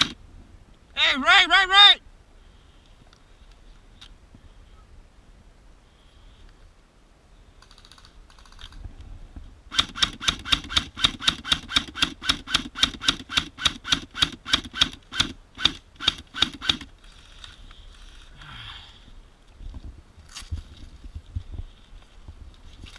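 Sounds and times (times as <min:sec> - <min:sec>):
airsoft gun firing: 0:09.7 - 0:16.9.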